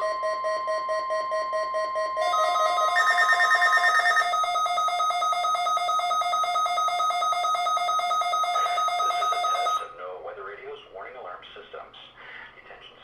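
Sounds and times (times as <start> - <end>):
rapid electronic alarm beeping: 0.0 - 9.9
steady alert tone: 2.2 - 9.9.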